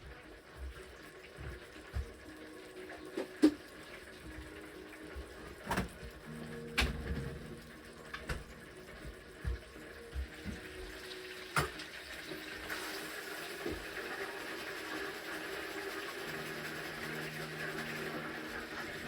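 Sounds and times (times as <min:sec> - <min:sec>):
food sizzling in a hot pan: 0:08.6 - 0:19.0.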